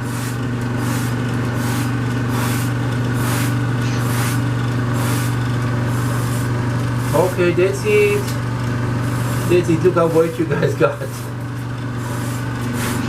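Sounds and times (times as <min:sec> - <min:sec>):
low electrical hum: 0:00.0 - 0:13.0
spray bottle squirting: 0:00.8 - 0:07.2.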